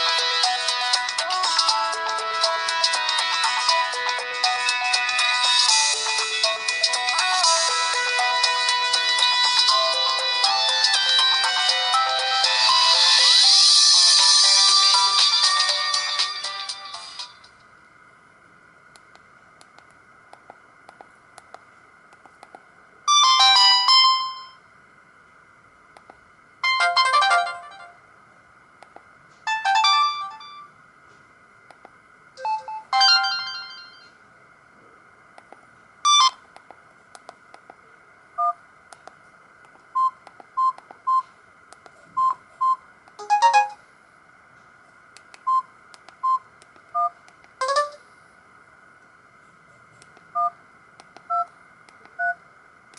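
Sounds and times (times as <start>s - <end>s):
phone ringtones: 47.0s - 48.0s.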